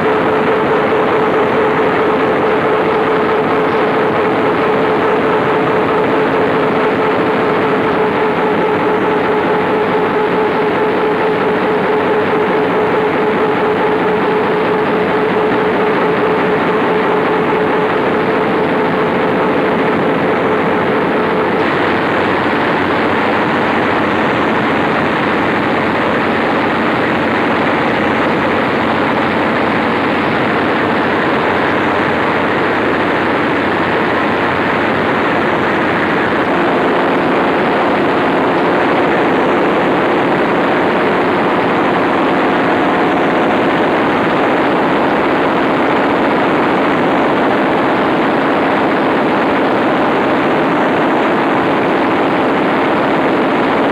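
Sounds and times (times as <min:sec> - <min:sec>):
diesel generator engine running: 0:00.0 - 0:53.9.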